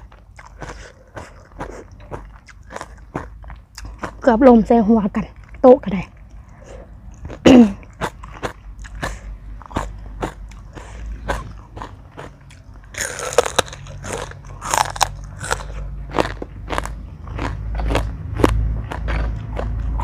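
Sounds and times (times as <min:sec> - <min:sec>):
wet chewing with crunches: 0:00.0 - 0:04.6, 0:05.2 - 0:20.0.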